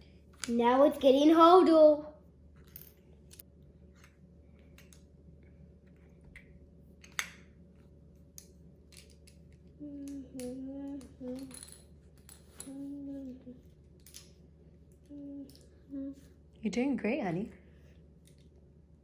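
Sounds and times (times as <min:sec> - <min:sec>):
person humming: 0:09.8 - 0:11.7, 0:12.6 - 0:13.7, 0:15.0 - 0:16.3.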